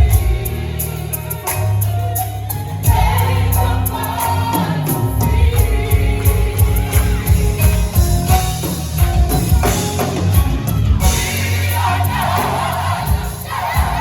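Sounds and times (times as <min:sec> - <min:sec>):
people singing: 0:00.0 - 0:10.2, 0:11.0 - 0:14.0
crowd shouting and cheering: 0:00.0 - 0:14.0
gospel band with heavy bass: 0:00.0 - 0:14.0.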